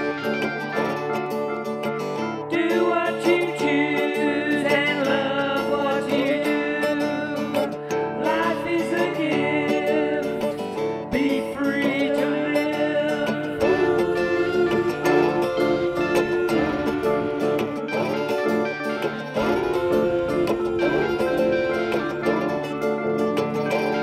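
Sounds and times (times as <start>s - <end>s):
plucked acoustic guitar music: 0.0s - 24.0s.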